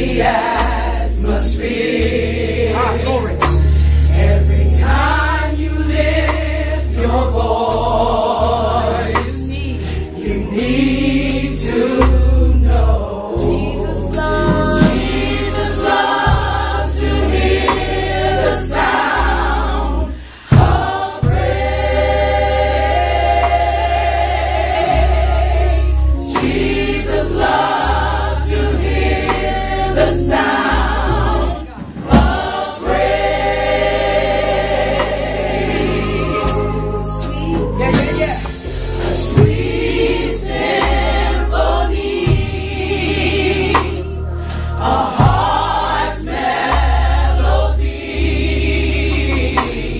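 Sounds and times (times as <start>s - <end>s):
choir singing: 0.0s - 49.9s
low bass notes: 0.0s - 49.9s
sharp drum hits: 14.5s - 16.9s, 20.5s - 21.6s, 31.2s - 33.0s, 37.8s - 39.8s.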